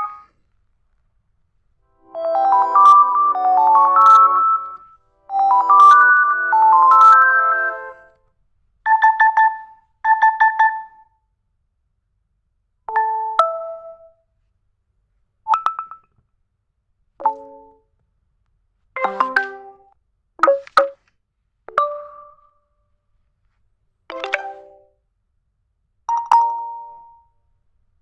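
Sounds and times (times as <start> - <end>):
melodic phone ringtone: 2.0 - 8.1, 19.0 - 19.6
rapid phone beeps: 2.2 - 8.0.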